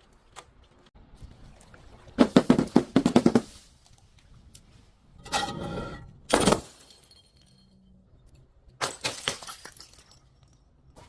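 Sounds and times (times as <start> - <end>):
glass bottle smashing: 8.8 - 10.6
crunching glass: 8.8 - 10.7.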